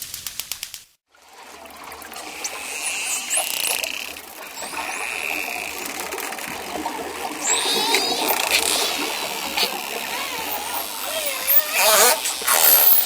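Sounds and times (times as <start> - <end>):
water hiss: 1.6 - 13.0
dolphin buzzing tone: 2.2 - 13.0
dolphin whistling: 2.4 - 6.2, 7.2 - 13.0.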